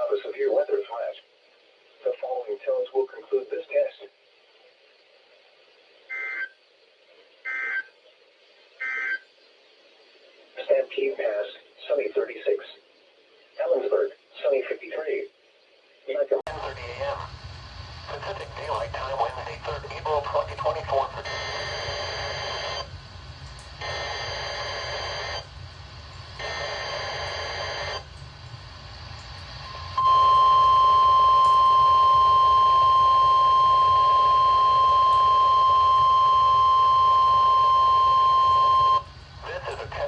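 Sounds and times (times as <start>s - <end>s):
steady warning alarm tone: 21.0s - 28.3s, 29.3s - 39.6s
screechy digital data bursts: 26.1s - 28.1s.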